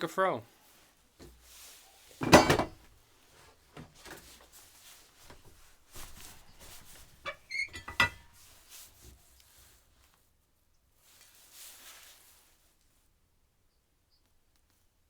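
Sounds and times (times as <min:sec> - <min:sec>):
objects knocking and clinking: 0:02.2 - 0:02.8.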